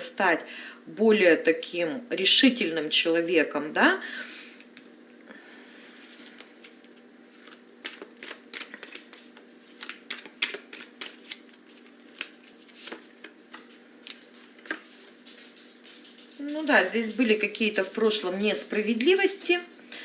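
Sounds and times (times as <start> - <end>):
faint steady hum: 0.0 - 20.0
cards being shuffled: 5.8 - 16.2.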